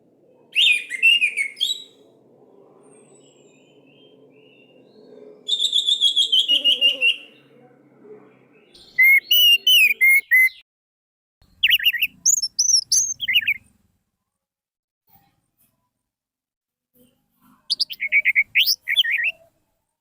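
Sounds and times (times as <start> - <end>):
faint low hum: 0.0 - 8.9
thrush singing whistled phrases: 0.5 - 2.1, 3.1 - 7.5, 8.8 - 10.6, 11.6 - 13.6, 17.7 - 19.4.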